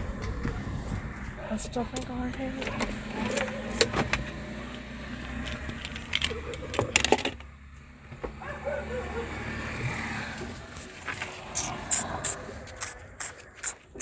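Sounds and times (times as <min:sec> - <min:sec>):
metallic jingling and clinking: 0:05.2 - 0:06.9.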